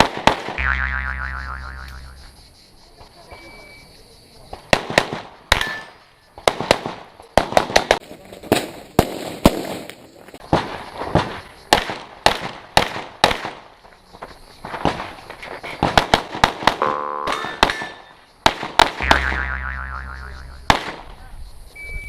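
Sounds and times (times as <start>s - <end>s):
handgun shots: 15.8s - 19.2s.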